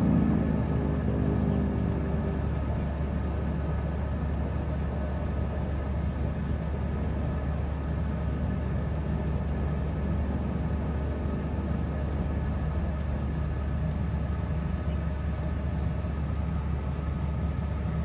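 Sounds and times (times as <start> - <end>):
faint engine whine: 0.0 - 18.0
turboprop engines droning: 0.0 - 18.0.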